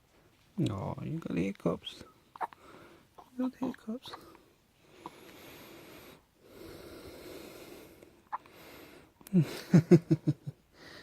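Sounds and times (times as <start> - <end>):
baby squeaky vocal sounds: 2.3 - 2.6.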